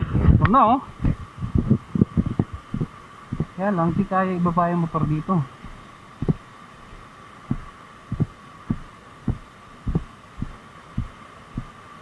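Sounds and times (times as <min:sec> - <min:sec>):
steady hum: 0:00.0 - 0:12.0
footsteps as dull thumps: 0:01.0 - 0:03.5, 0:05.6 - 0:11.7.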